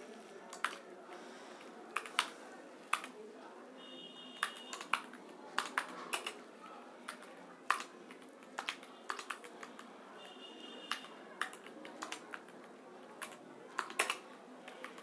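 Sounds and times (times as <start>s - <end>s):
keyboard typing clicks: 0.5s - 0.8s, 1.6s - 3.2s, 4.4s - 6.4s, 7.1s - 9.9s, 10.8s - 15.0s.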